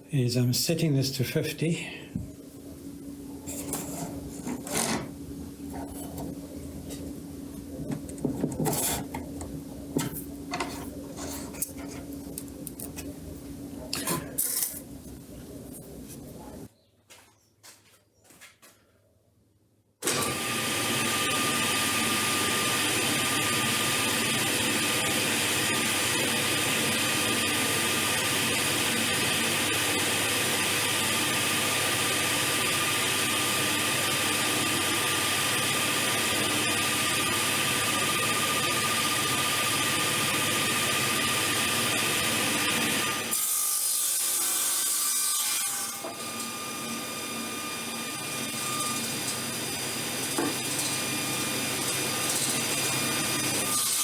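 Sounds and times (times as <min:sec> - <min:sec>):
power saw cutting wood: 0:20.0 - 0:54.0.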